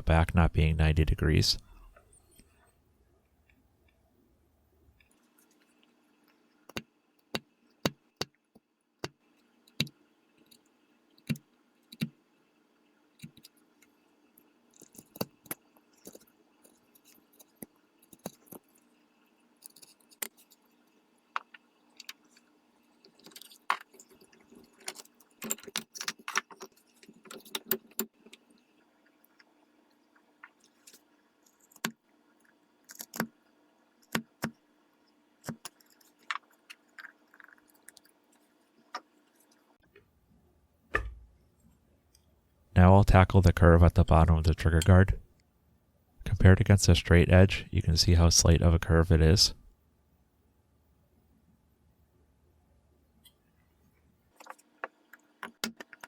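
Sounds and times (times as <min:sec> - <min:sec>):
faint steady hum: 0:00.0 - 0:56.0.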